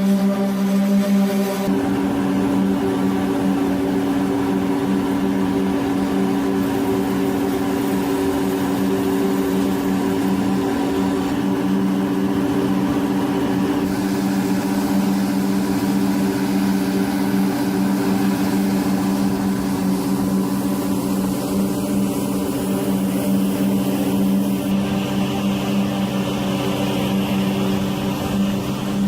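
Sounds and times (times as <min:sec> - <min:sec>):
heavy machine engine humming: 0:00.0 - 0:29.0.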